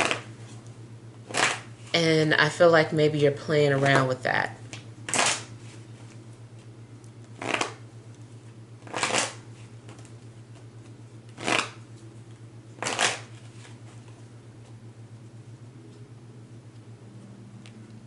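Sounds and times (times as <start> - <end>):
cards being shuffled: 7.3 - 7.8, 8.8 - 11.8, 12.8 - 14.1.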